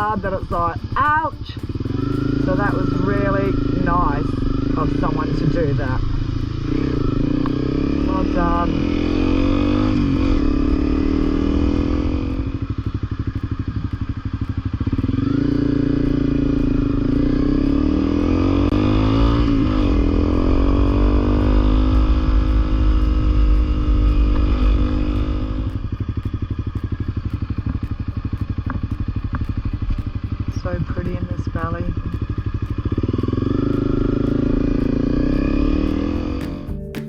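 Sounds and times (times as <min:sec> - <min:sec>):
motorcycle engine revving: 0:00.0 - 0:37.0.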